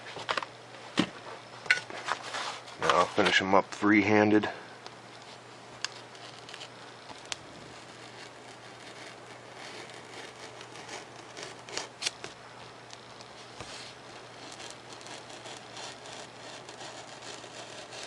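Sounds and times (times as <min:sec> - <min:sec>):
knife cutting foam: 0:05.8 - 0:12.4, 0:13.2 - 0:18.0
sharp knife scrapes: 0:13.7 - 0:18.0.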